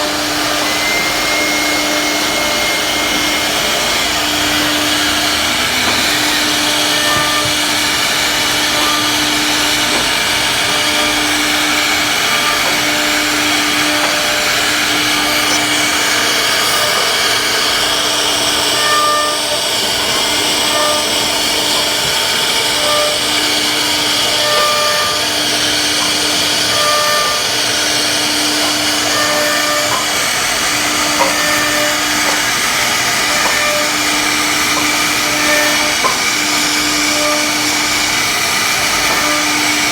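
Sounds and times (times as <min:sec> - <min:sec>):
router spindle cutting wood: 0:00.0 - 0:39.9.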